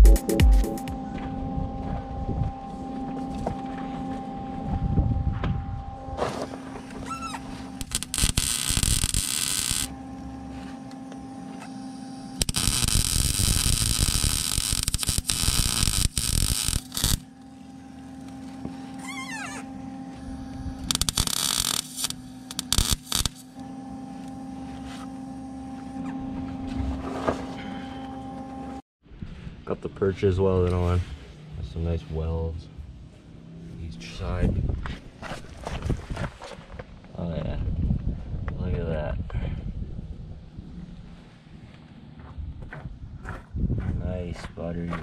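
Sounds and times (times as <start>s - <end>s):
steady electrical hum: 0.8s - 28.8s
arc welding crackle: 7.1s - 17.3s, 20.4s - 23.6s.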